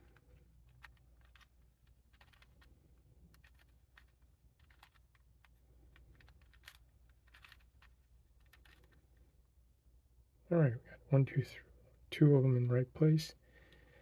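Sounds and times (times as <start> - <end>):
puzzle cube clicking: 0.2 - 9.0.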